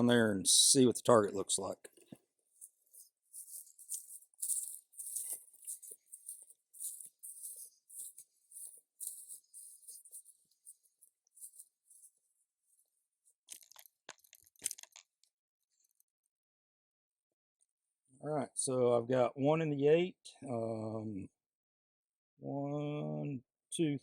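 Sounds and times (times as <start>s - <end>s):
footsteps crunching: 2.0s - 12.1s.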